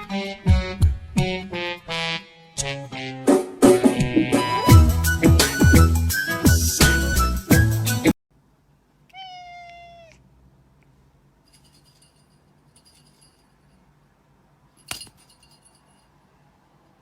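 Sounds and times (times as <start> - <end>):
background music: 0.0 - 8.1
cat meowing: 9.1 - 10.2.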